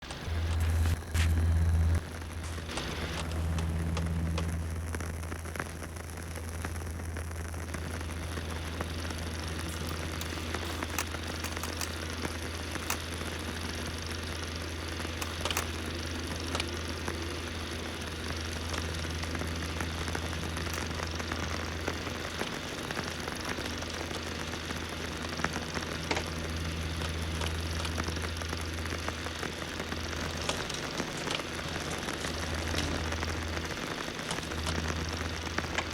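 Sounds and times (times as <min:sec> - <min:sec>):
hiss and crackle: 0:00.0 - 0:35.9
low hum: 0:00.0 - 0:35.9
sharp pops and clicks: 0:02.4 - 0:13.2, 0:15.1 - 0:16.7.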